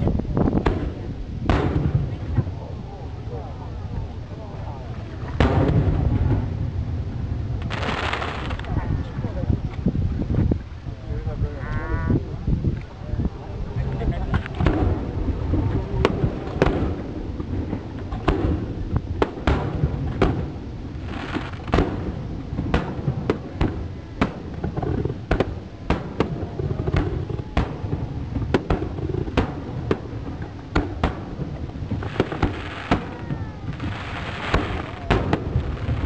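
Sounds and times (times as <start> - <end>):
low rumble: 0.0 - 36.0
crackling firework bursts: 4.8 - 8.9, 14.3 - 36.0
firework shells bursting: 16.0 - 36.0.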